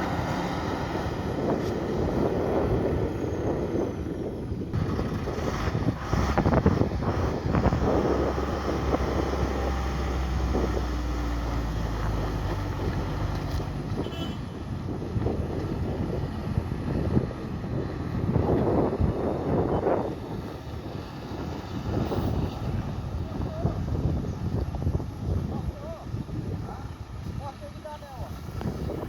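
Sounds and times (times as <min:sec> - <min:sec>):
diesel engine droning under load: 0:00.0 - 0:27.2.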